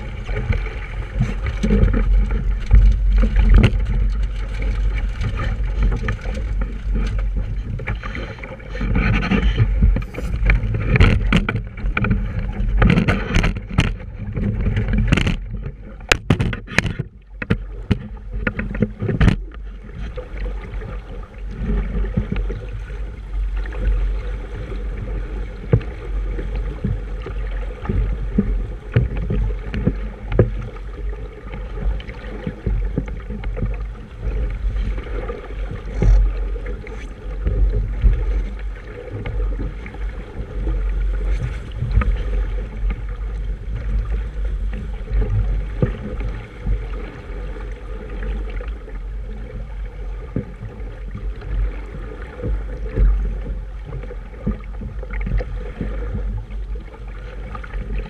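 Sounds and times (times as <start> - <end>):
steady low rumble: 0.0 - 58.0
water washing along hull: 0.0 - 58.0
sharp knocks and clatters: 8.8 - 19.5.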